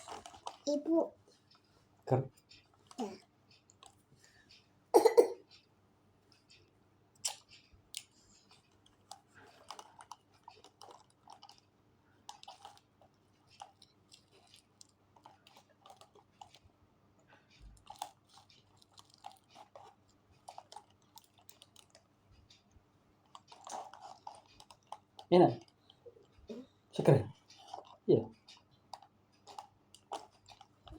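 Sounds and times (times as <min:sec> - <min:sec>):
person chewing crunchy food: 0:00.0 - 0:00.7, 0:07.2 - 0:16.6, 0:17.6 - 0:22.1, 0:23.2 - 0:26.4, 0:27.5 - 0:30.9.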